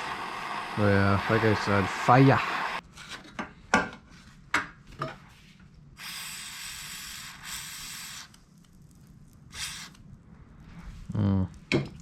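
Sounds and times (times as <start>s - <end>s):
gas torch flame hissing: 0.0s - 2.8s, 5.9s - 8.6s, 9.4s - 10.1s.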